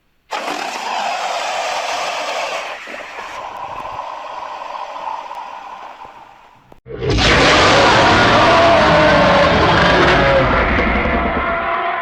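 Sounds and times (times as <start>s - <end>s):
harsh hissing creature screech: 0.3s - 6.3s.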